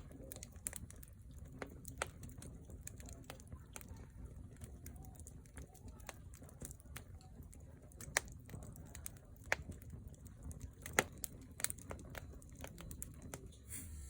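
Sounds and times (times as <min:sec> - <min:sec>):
firewood crackling and popping: 0:00.0 - 0:14.0
low rumble of fire: 0:00.0 - 0:14.0.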